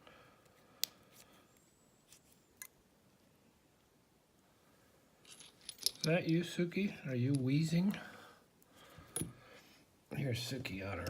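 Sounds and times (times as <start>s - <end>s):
metallic clicks of lock parts: 5.3s - 6.4s.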